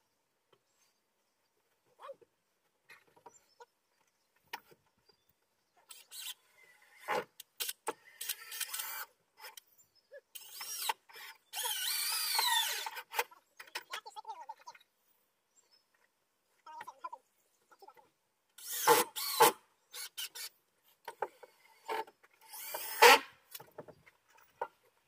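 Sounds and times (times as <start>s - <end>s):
power drill driving screws: 5.9s - 9.1s, 10.4s - 13.2s, 18.6s - 20.5s, 21.7s - 23.4s.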